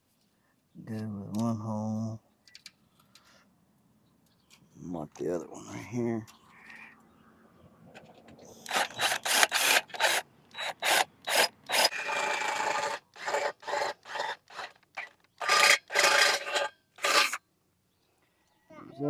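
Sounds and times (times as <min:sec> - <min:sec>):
scraping strokes on wood: 0:08.7 - 0:17.4.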